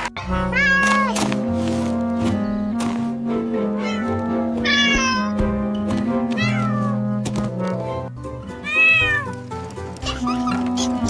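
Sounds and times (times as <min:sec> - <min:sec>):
background music: 0:00.0 - 0:11.0
kitten meowing: 0:00.4 - 0:01.2, 0:03.8 - 0:05.4, 0:06.4 - 0:07.1, 0:08.6 - 0:10.6.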